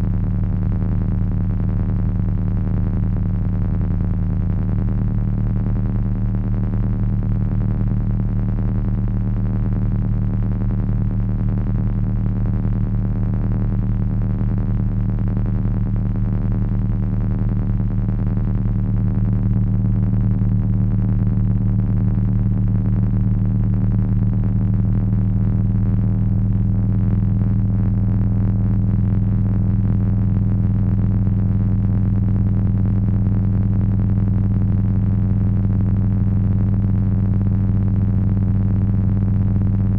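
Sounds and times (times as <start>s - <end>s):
low electronic drone: 8.5s - 39.9s.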